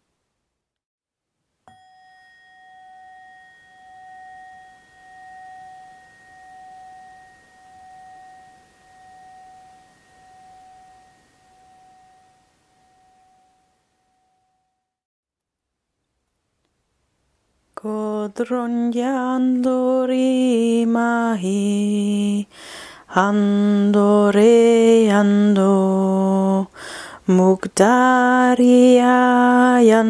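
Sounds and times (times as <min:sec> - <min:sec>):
metal chime ringing: 0:01.7 - 0:14.9.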